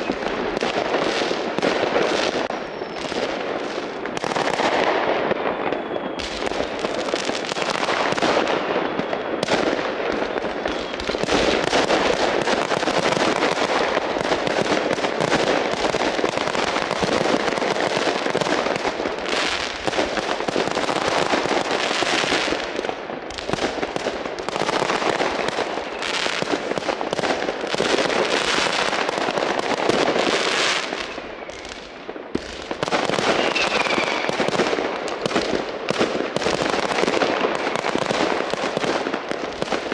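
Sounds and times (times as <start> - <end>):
firecrackers crackling and banging: 0.0 - 39.9
falling firework whistle: 2.4 - 3.4, 4.2 - 11.7, 30.4 - 34.6.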